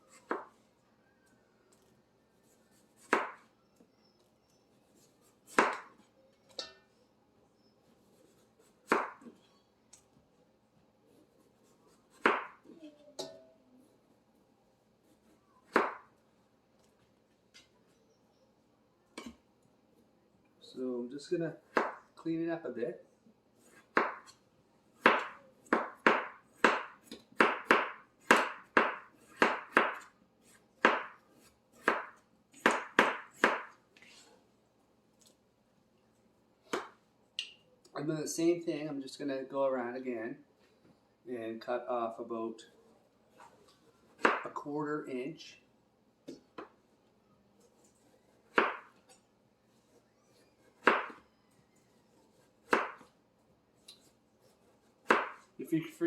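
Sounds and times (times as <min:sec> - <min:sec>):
knife chopping on cutting board: 0:00.2 - 0:00.5, 0:03.0 - 0:03.4, 0:05.5 - 0:05.9, 0:08.8 - 0:09.3, 0:12.1 - 0:12.6, 0:15.6 - 0:16.0, 0:23.7 - 0:24.3, 0:25.0 - 0:30.1, 0:30.8 - 0:33.7, 0:44.2 - 0:44.5, 0:48.0 - 0:48.9, 0:50.8 - 0:51.2, 0:52.4 - 0:53.1, 0:54.6 - 0:55.4.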